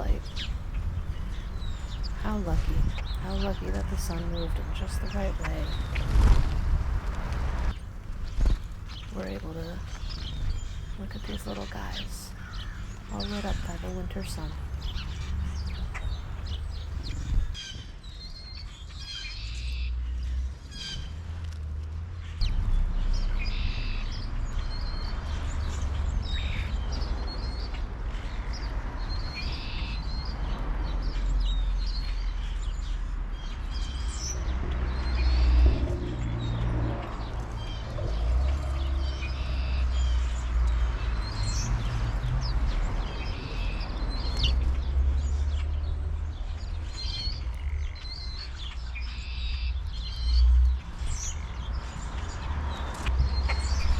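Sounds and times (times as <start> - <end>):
steady low rumble: 0.0 - 17.6
small songbirds chirping: 0.0 - 21.0, 23.1 - 53.9.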